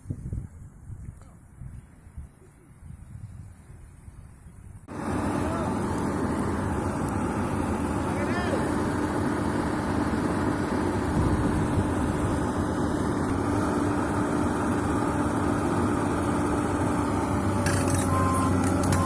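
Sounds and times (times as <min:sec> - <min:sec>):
excavator diesel engine droning: 0:04.9 - 0:19.0.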